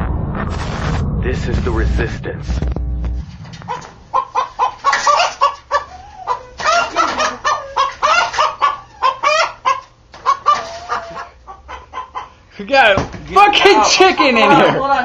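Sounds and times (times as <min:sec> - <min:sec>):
rooster clucking and squawking: 0:03.6 - 0:12.5.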